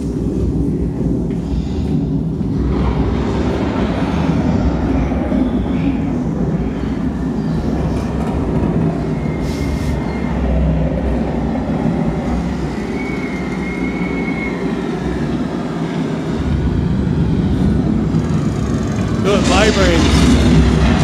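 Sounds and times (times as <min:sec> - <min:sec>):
loud low rumble from speakers: 0:00.0 - 0:21.0.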